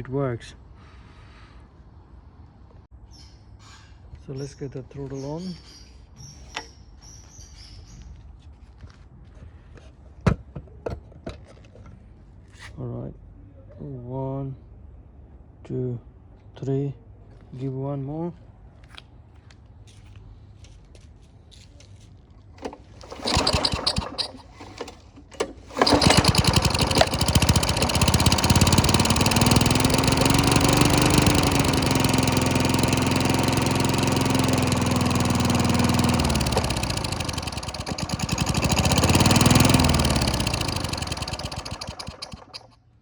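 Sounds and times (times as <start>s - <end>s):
lawn mower engine running: 22.6s - 42.8s
recoil cord pull: 22.6s - 42.8s.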